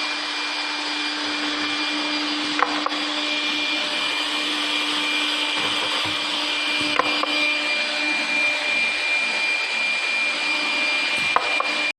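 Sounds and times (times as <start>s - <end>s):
drilling machine whine and hiss: 0.0s - 11.9s.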